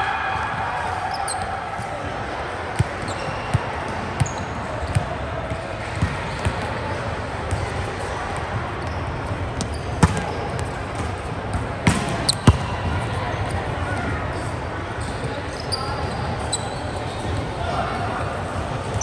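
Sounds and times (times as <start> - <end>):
volleyball slaps on gym floor: 9.6 - 13.6.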